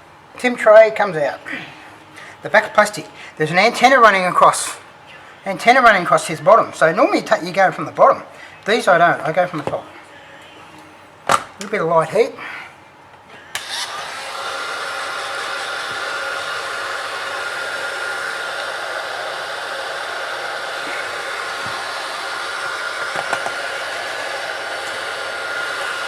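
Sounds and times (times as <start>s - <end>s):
hot-air blower whining: 13.2s - 26.0s.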